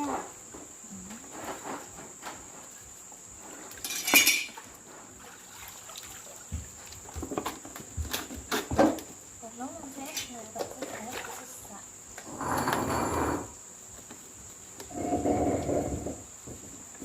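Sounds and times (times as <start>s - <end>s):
dishes and utensils clattering: 3.8s - 4.7s.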